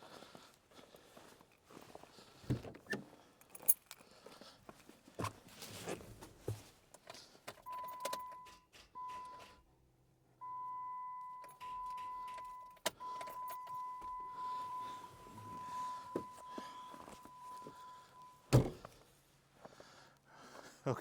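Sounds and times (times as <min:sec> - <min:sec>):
keys jingling: 0:03.4 - 0:04.0, 0:07.5 - 0:09.6, 0:11.4 - 0:17.9
car warning tone: 0:07.7 - 0:09.6, 0:10.4 - 0:18.9.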